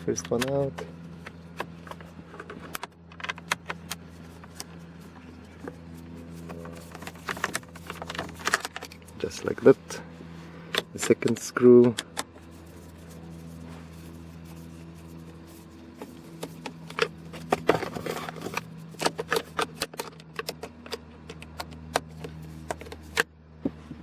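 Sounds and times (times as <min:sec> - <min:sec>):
low hum: 0:00.0 - 0:24.0
screwdriver clicks and scrapes: 0:01.2 - 0:09.7, 0:10.7 - 0:23.3.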